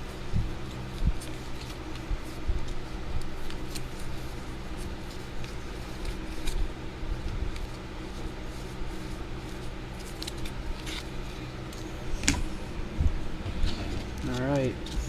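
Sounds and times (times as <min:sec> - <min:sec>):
steady low hum: 0:08.2 - 0:15.0.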